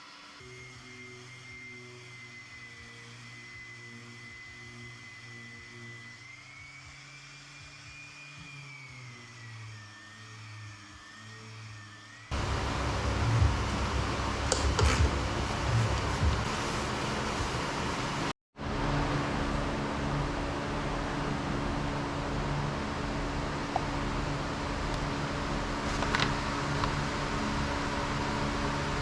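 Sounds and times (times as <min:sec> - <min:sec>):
orbital sander with vacuum humming: 0:00.0 - 0:29.0
loud rough noise: 0:12.3 - 0:29.0.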